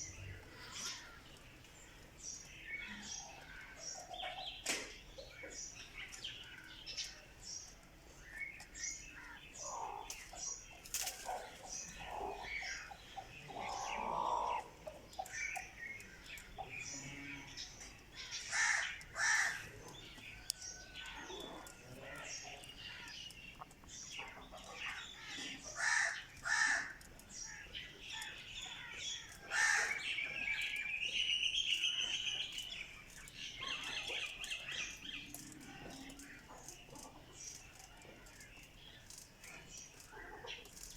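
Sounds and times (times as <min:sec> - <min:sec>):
lower longer bird calls: 0:00.0 - 0:04.7, 0:08.6 - 0:32.7
birds chirping: 0:00.0 - 0:40.9.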